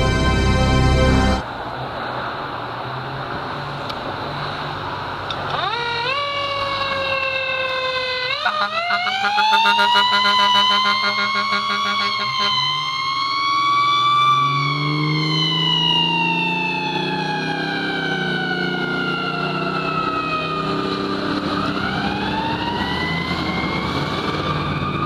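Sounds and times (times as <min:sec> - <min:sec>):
fire truck engine running: 0:00.0 - 0:01.4, 0:15.6 - 0:25.0
mechanical siren wailing: 0:05.5 - 0:25.0.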